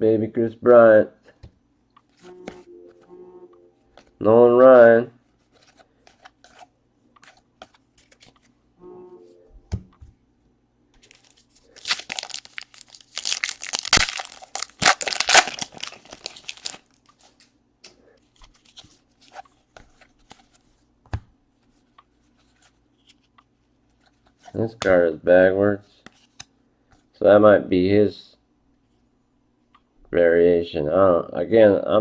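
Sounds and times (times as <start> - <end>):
cards clicking and rustling: 5.4 - 8.5, 18.3 - 20.8
wrapper tearing and crinkling: 11.0 - 17.4.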